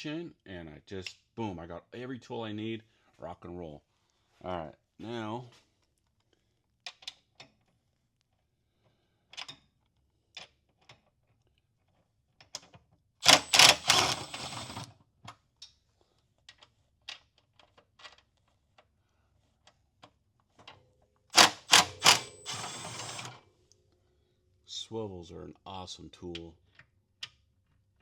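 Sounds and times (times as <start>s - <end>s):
ratchet clicking: 13.2s - 14.8s, 21.4s - 23.4s.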